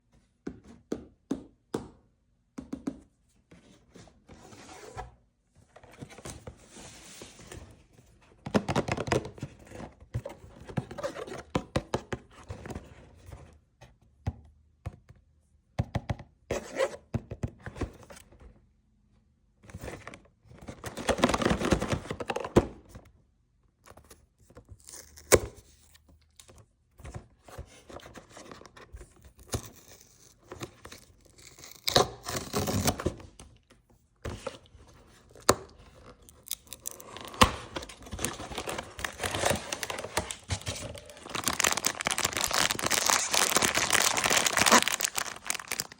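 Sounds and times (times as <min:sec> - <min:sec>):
packaging being torn and crinkled: 0:29.6 - 0:33.0, 0:36.2 - 0:45.9.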